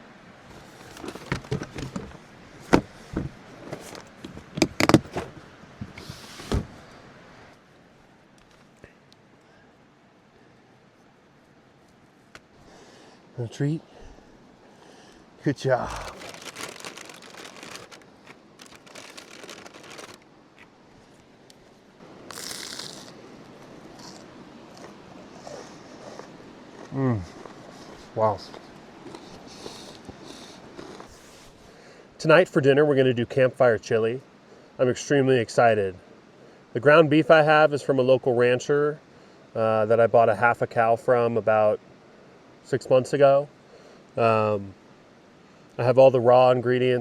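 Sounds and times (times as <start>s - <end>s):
plastic bag crinkling: 15.8s - 20.2s, 22.3s - 23.1s
short hiss: 22.3s - 23.2s.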